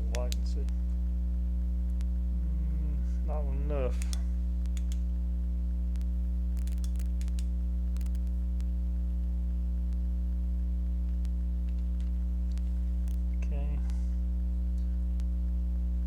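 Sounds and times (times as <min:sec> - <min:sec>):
faint small clicks and taps: 0:00.0 - 0:01.0, 0:03.9 - 0:05.1, 0:05.9 - 0:08.8, 0:11.0 - 0:14.1
electrical mains hum: 0:00.0 - 0:16.0.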